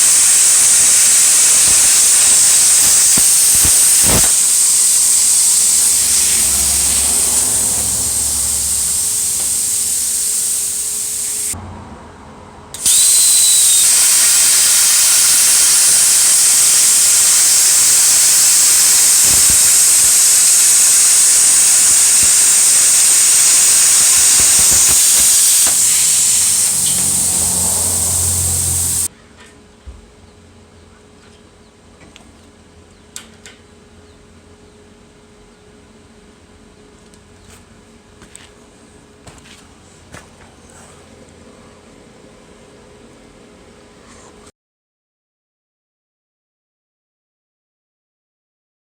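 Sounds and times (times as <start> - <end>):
plasma cutter hissing: 0.0 - 11.6, 12.8 - 29.1.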